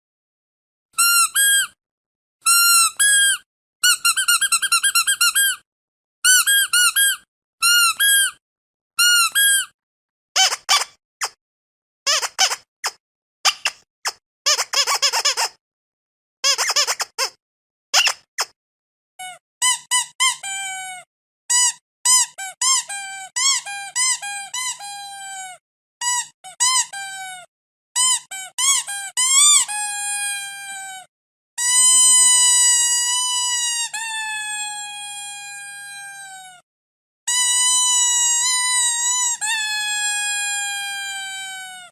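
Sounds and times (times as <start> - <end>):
squeaky rubber dog toy: 1.0 - 1.8, 2.4 - 5.6, 6.2 - 8.4, 9.0 - 9.7, 10.4 - 11.4, 12.1 - 15.6, 16.4 - 17.4, 18.0 - 18.6, 19.2 - 36.6, 37.3 - 41.9.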